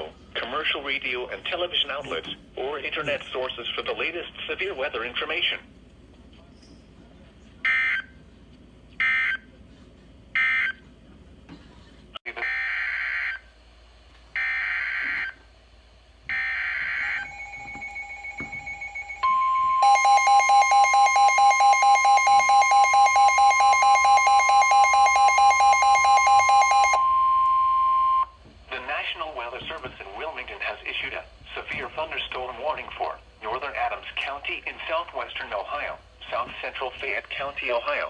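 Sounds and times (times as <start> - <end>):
steady warning alarm tone: 12.3 - 13.5, 14.3 - 15.4, 16.2 - 28.4
pulsing electronic alert beep: 17.0 - 28.3.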